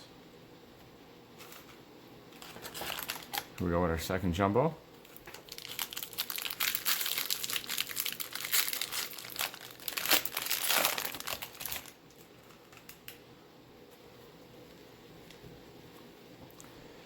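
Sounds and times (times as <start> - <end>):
foil wrapper tearing and crinkling: 2.3 - 3.7, 5.0 - 13.2.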